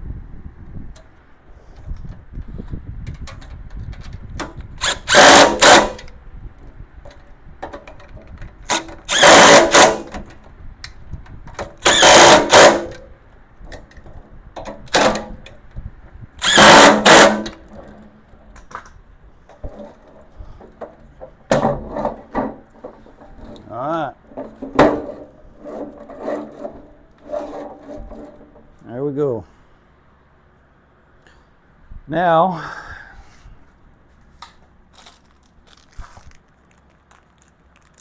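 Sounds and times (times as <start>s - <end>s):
power drill bursts: 4.8s - 6.1s, 8.7s - 10.1s, 11.8s - 13.0s, 16.4s - 17.5s.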